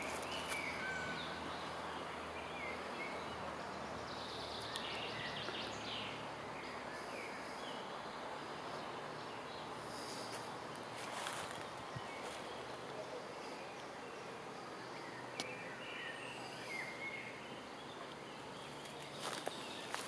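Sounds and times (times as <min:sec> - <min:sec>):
songbirds calling: 0:00.0 - 0:20.0.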